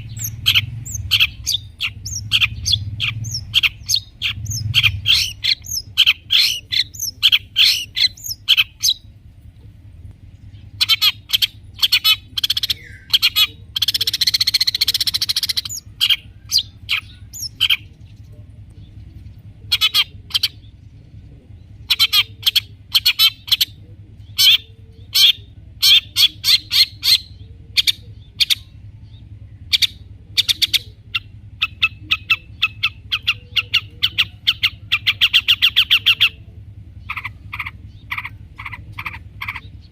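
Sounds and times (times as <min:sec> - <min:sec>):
quick rattling bird call: 0:00.0 - 0:09.0
bird singing sharp chirps: 0:00.0 - 0:09.1, 0:10.3 - 0:39.9.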